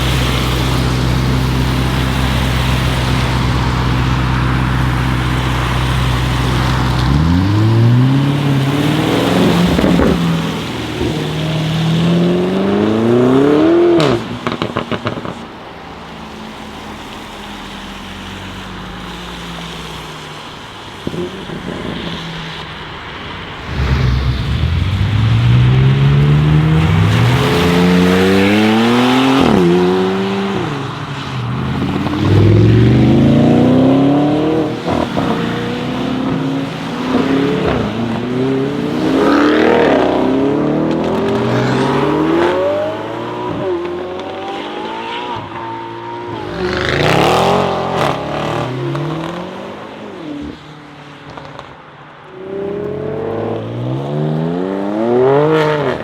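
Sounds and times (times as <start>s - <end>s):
car engine accelerating hard: 0.0s - 15.3s, 21.0s - 49.8s.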